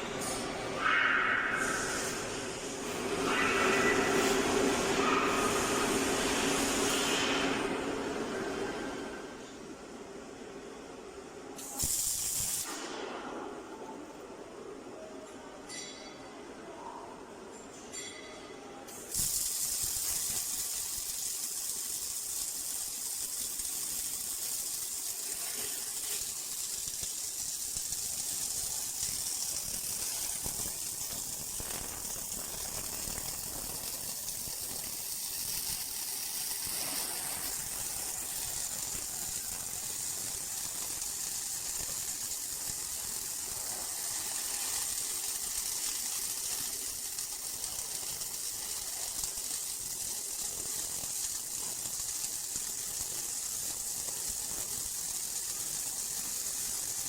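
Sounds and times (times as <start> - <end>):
welding arc hissing: 0.0 - 9.4, 11.6 - 13.0, 18.9 - 57.0.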